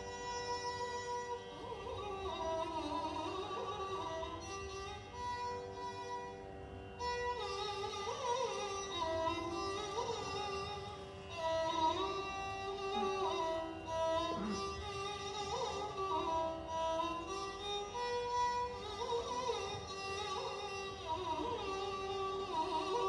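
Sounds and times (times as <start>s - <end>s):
string instrument melody: 0.0s - 23.0s.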